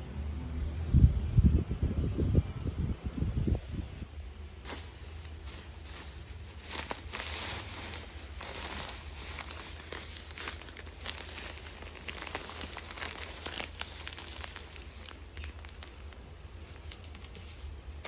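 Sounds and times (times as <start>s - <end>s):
packaging crinkling: 4.7s - 18.0s.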